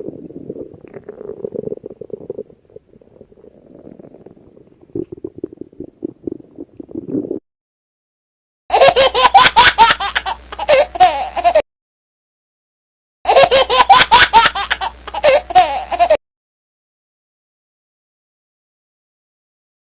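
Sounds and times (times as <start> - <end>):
stomach growling: 0.0 - 7.4
high-pitched giggling laughter: 8.7 - 11.6, 13.3 - 16.2.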